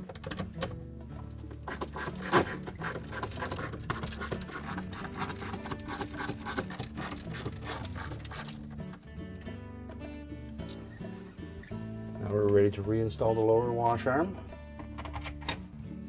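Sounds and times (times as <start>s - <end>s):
soft background music: 0.0s - 16.0s
screwdriver clicks and scratches: 1.6s - 8.6s.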